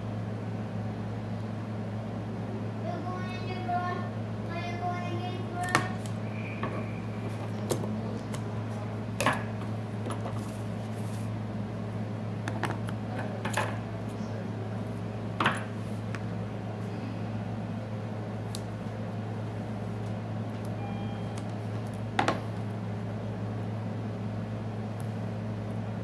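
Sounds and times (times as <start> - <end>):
low electrical hum: 0.0 - 26.0.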